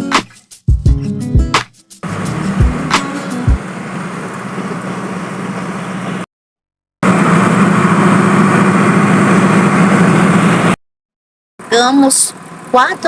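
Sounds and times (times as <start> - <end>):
vehicle engine and road noise: 2.0 - 6.3, 7.0 - 10.8, 11.6 - 13.0.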